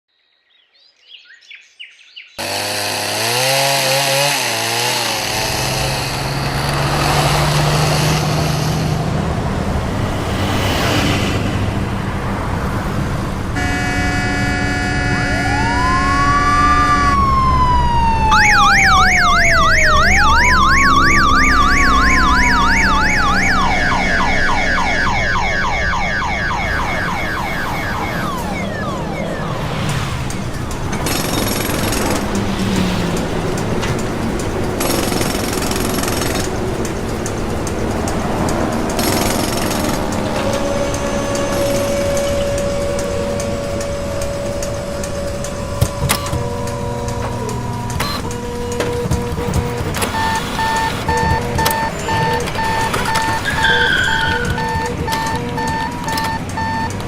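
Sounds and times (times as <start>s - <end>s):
street noise: 4.2s - 57.0s
steady horn-like tone: 13.5s - 17.7s
emergency siren wailing and yelping: 13.6s - 57.0s.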